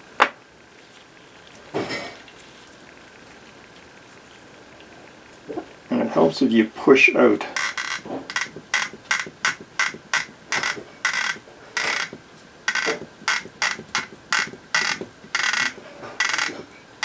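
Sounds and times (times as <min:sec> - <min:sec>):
syringe mechanism clicking: 0:07.5 - 0:16.7.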